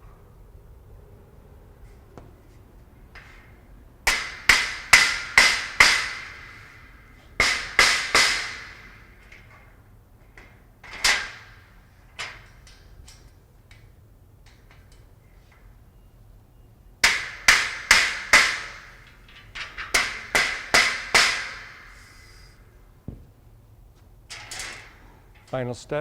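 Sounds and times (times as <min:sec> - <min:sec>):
rubber mallet striking steel frame: 0:04.1 - 0:06.8, 0:07.4 - 0:09.0, 0:17.0 - 0:19.0, 0:19.9 - 0:22.0.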